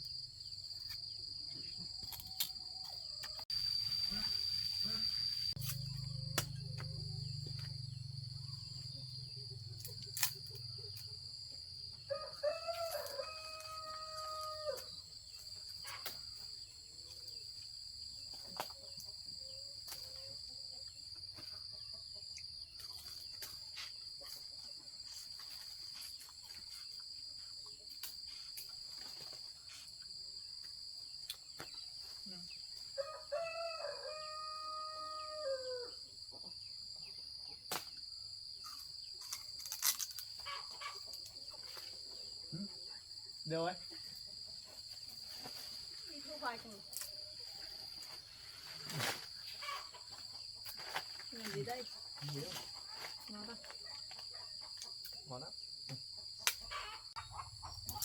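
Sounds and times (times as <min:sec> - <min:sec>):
rooster crowing: 0:12.0 - 0:15.0, 0:33.0 - 0:36.0.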